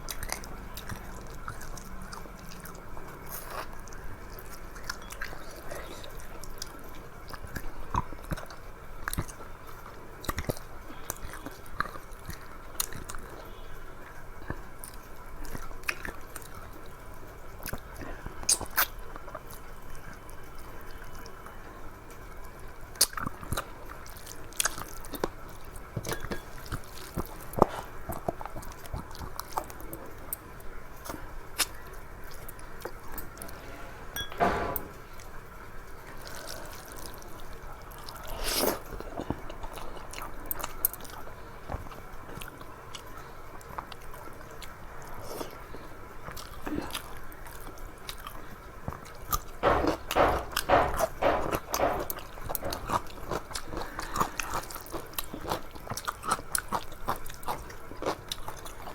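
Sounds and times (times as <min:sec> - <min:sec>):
person chewing food: 0:00.0 - 0:08.5, 0:46.2 - 0:58.9.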